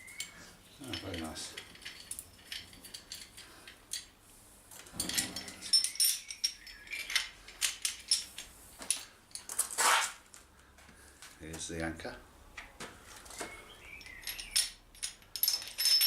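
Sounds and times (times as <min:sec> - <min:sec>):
small clicks and clinks: 0:00.1 - 0:04.1, 0:04.7 - 0:09.7, 0:13.3 - 0:16.0.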